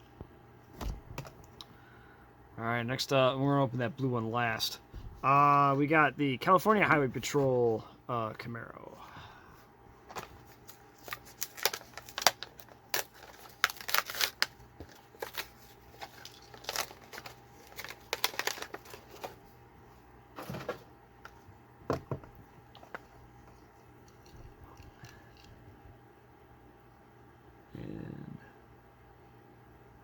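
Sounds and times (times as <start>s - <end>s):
plastic and card packaging crinkling: 10.1s - 19.4s.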